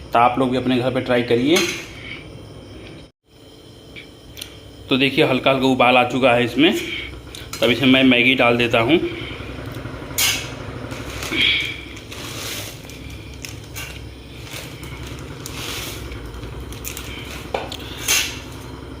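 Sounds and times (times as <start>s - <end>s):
noodles scraping and rustling: 10.2s - 18.6s.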